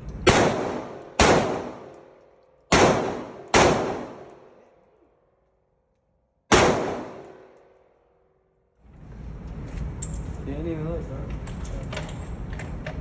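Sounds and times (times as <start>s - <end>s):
echoing gunshots: 0.2s - 2.1s, 2.7s - 4.6s, 6.5s - 7.6s.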